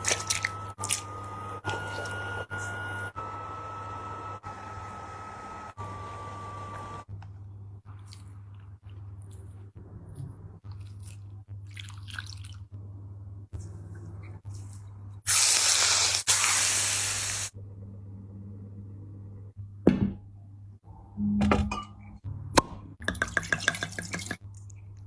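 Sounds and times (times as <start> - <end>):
wet chewing and slurping: 7.9 - 12.7.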